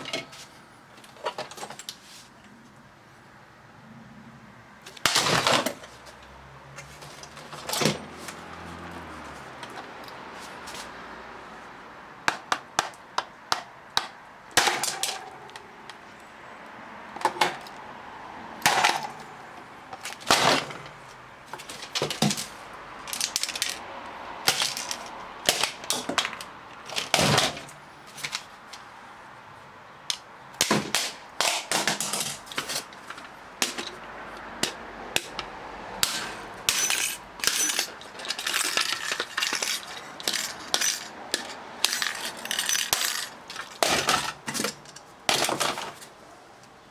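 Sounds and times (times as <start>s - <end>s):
plastic parts clicking and knocking: 12.2s - 16.0s, 17.2s - 17.8s, 19.9s - 23.8s, 24.4s - 28.8s, 30.0s - 46.1s.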